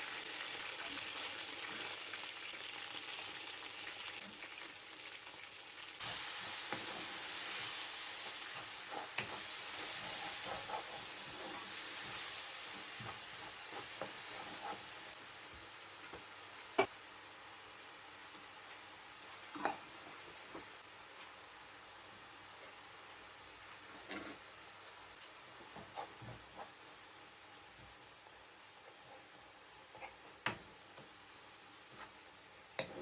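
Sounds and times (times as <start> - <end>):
food sizzling in oil: 0.0 - 33.0
utensil scraping a pan: 6.7 - 15.1.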